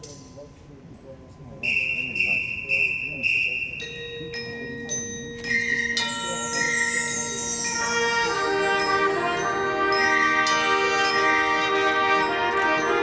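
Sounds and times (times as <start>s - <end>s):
ringing bell and mallet notes: 3.8s - 13.0s
shimmering high sweep: 6.0s - 12.4s
marching band playing: 7.0s - 13.0s.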